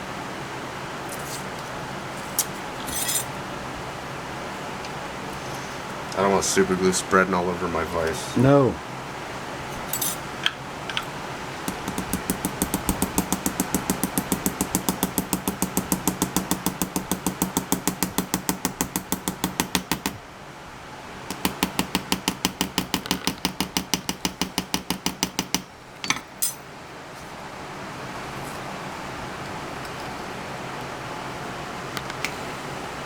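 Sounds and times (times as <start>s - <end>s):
small hammer tapping metal: 11.7s - 20.2s, 21.3s - 26.6s.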